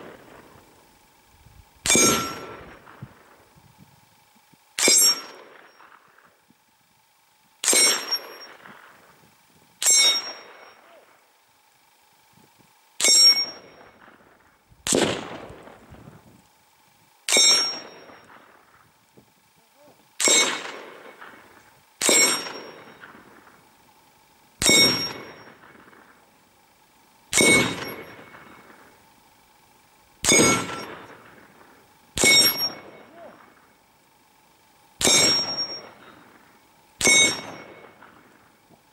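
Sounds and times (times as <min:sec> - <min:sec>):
bullets clanging on steel gongs: 0:01.9 - 0:02.6, 0:09.8 - 0:10.9, 0:20.2 - 0:21.3, 0:22.0 - 0:23.1, 0:32.2 - 0:33.4, 0:35.0 - 0:36.0, 0:37.0 - 0:38.2.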